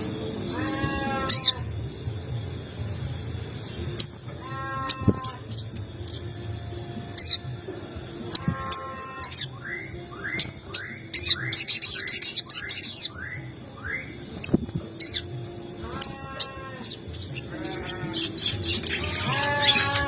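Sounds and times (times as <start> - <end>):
harsh high scolding bird calls: 0.4 - 1.9, 2.9 - 20.0
bird chirping: 2.4 - 7.5, 8.1 - 20.0.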